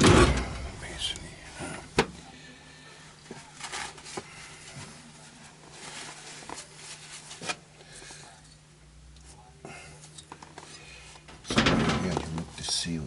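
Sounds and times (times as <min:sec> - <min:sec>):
faint steady hum: 0:00.0 - 0:13.0
rustles of parts: 0:03.2 - 0:08.6, 0:10.0 - 0:13.0.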